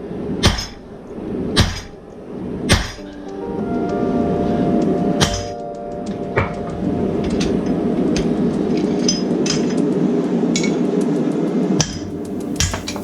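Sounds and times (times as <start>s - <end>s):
low background sound: 0.0s - 13.0s
hammer striking steel: 0.4s - 0.8s, 1.6s - 2.0s, 2.7s - 3.1s, 5.2s - 5.5s, 11.8s - 13.0s.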